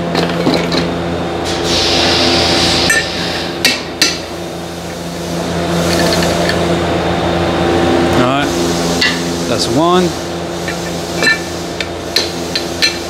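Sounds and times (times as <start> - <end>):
steady hum: 0.0 - 13.0
metal tools tapping and clinking: 5.9 - 6.6, 10.7 - 11.5, 12.6 - 13.0.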